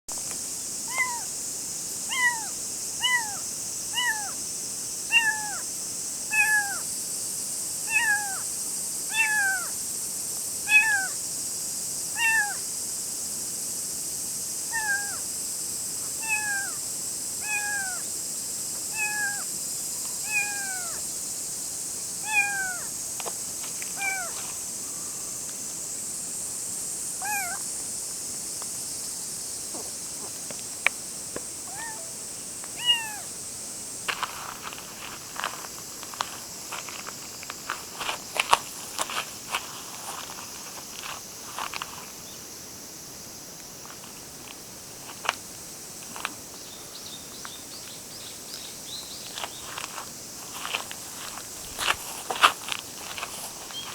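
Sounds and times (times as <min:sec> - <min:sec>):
steady high hiss: 0:00.1 - 0:53.9
kitten meowing: 0:00.9 - 0:01.3, 0:02.1 - 0:03.4, 0:04.0 - 0:04.4, 0:05.1 - 0:05.6, 0:06.3 - 0:06.8, 0:07.9 - 0:08.4, 0:09.1 - 0:09.7, 0:10.7 - 0:11.2, 0:12.2 - 0:12.6, 0:14.7 - 0:15.2, 0:16.2 - 0:16.8, 0:17.4 - 0:18.0, 0:18.9 - 0:19.5, 0:20.2 - 0:21.0, 0:22.2 - 0:22.9, 0:24.0 - 0:24.3, 0:27.2 - 0:27.6, 0:31.7 - 0:32.1, 0:32.8 - 0:33.3.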